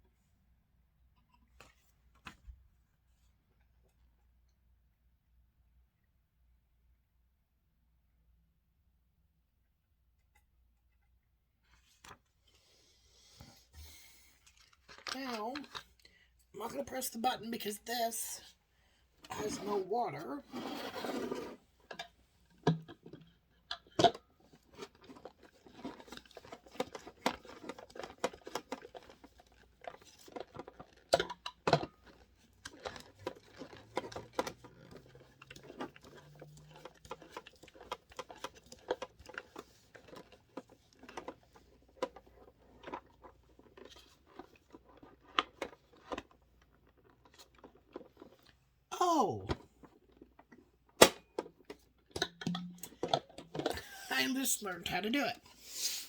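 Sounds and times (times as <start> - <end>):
small plastic clicks and rustles: 14.3 - 16.4, 21.2 - 48.7, 49.5 - 54.0.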